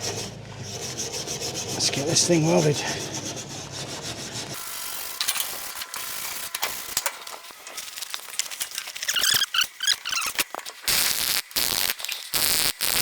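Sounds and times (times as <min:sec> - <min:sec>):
welding arc sizzling and crackling: 0:04.5 - 0:13.0.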